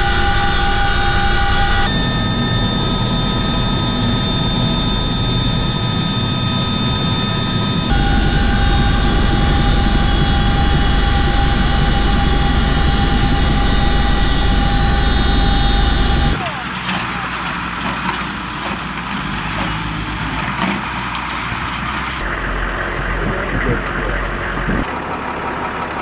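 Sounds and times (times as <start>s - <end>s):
aircraft turbine engines whining: 0.0s - 16.9s, 21.9s - 26.0s.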